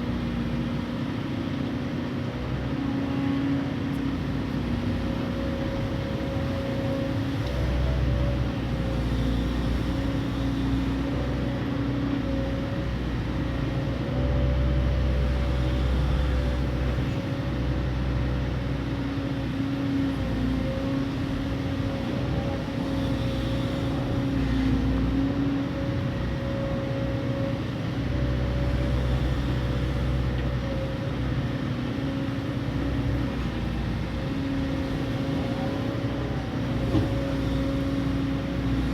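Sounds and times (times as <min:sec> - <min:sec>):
excavator diesel engine running: 0:00.0 - 0:38.9.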